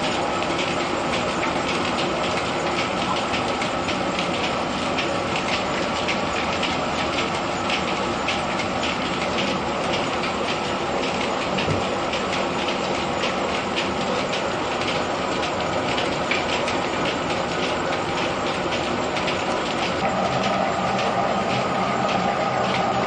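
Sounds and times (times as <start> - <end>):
rapid clicking clatter: 0.0 - 23.0
threshing machine rumble: 18.0 - 23.0.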